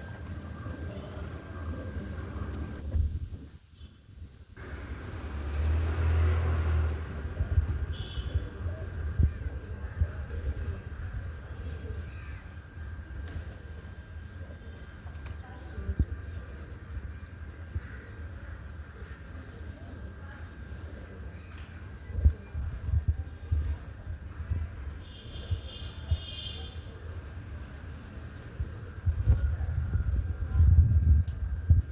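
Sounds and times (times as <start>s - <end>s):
cricket chirping: 7.9s - 18.2s, 18.8s - 31.9s.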